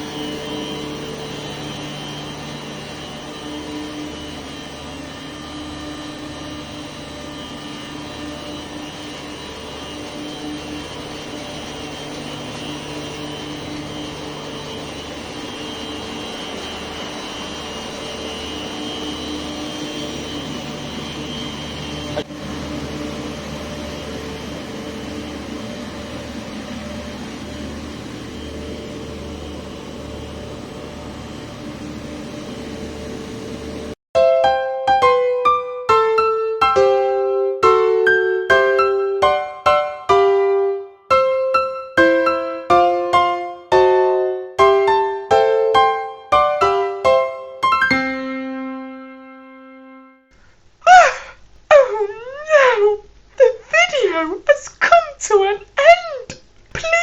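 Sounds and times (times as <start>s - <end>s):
machinery drone with hum: 0.0s - 34.0s.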